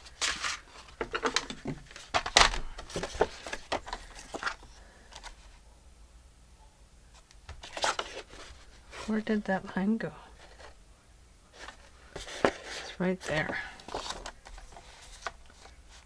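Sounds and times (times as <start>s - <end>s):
paper rustling: 0.0s - 5.5s, 7.6s - 9.2s, 11.5s - 16.0s.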